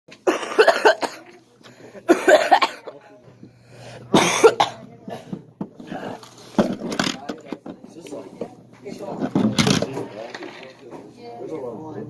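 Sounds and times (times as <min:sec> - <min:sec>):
person coughing: 0:00.2 - 0:01.3, 0:02.0 - 0:02.9, 0:04.1 - 0:06.2.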